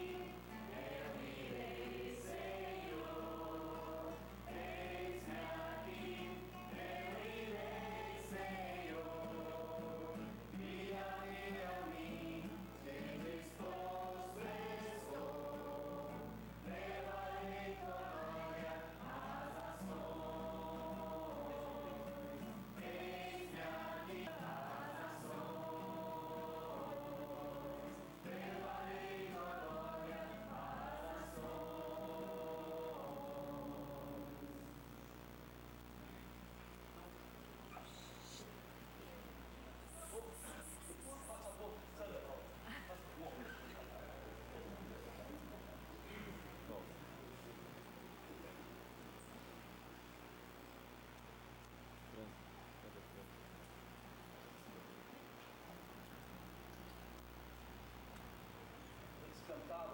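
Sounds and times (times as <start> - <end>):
choir singing in harmony: 0.0 - 34.8
steady low hum: 0.0 - 59.9.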